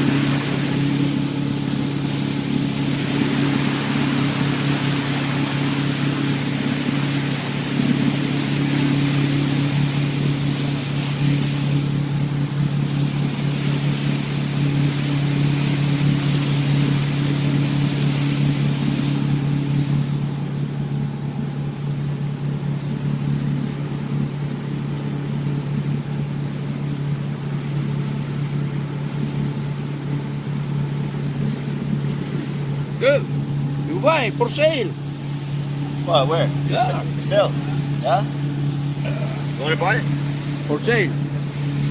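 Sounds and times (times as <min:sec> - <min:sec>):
motorboat engine drone: 0:00.0 - 0:41.9
water rushing: 0:00.0 - 0:41.9.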